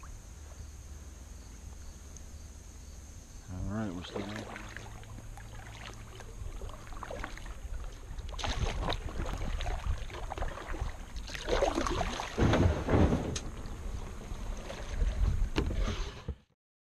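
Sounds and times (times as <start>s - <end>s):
kayak paddle splashing water: 3.8s - 15.8s
wind buffeting microphone: 7.9s - 11.2s.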